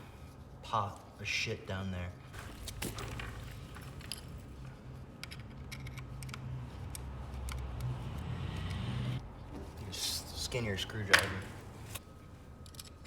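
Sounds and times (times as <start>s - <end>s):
small metal parts clinking: 2.4s - 7.6s.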